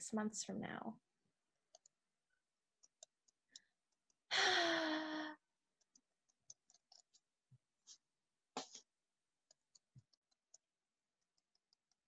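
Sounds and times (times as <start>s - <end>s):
person sighing heavily: 4.3s - 5.4s.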